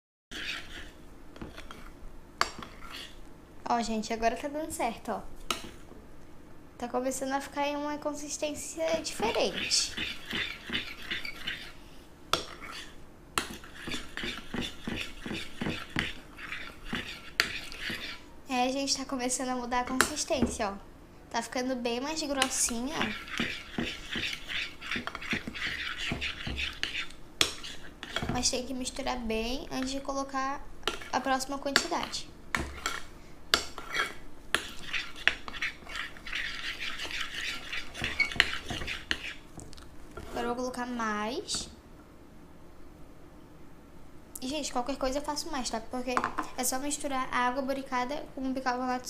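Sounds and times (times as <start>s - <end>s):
spoon stirring slime: 0.3s - 3.2s, 8.8s - 20.7s, 22.0s - 40.7s.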